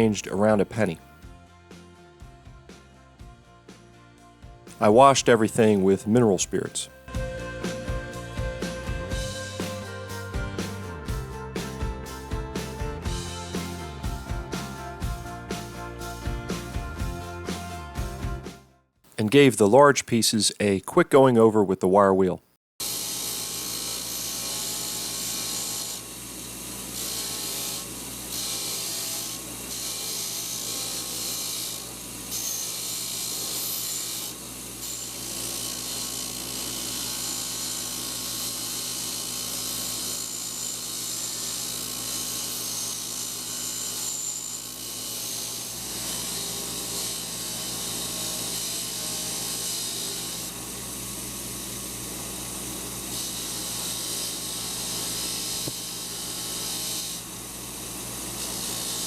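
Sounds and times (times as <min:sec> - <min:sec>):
wire wheel scratching metal: 0:38.8 - 0:50.5.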